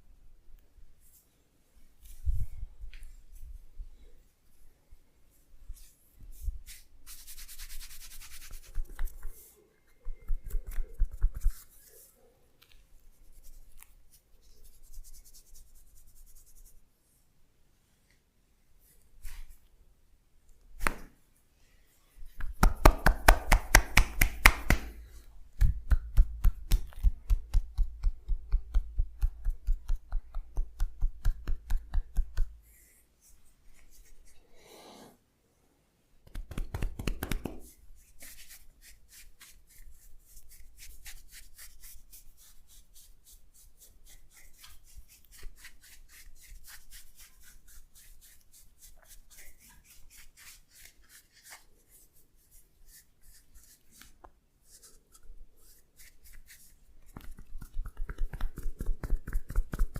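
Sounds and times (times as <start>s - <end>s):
soft rubbing: 0.9s - 18.2s, 21.3s - 35.2s, 36.6s - 59.9s
percussive massage strikes: 22.4s - 25.0s, 25.6s - 32.6s, 36.3s - 37.7s, 57.2s - 59.9s.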